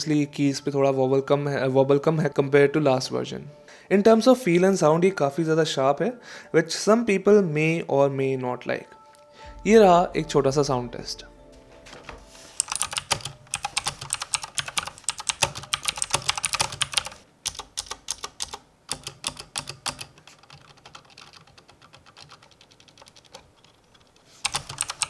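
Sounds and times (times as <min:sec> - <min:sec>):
typing on mechanical keyboard: 0:12.5 - 0:25.0.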